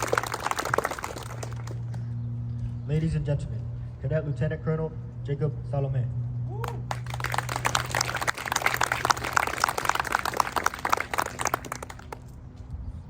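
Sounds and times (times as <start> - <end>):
audience applauding: 0.0 - 2.0, 6.7 - 12.3.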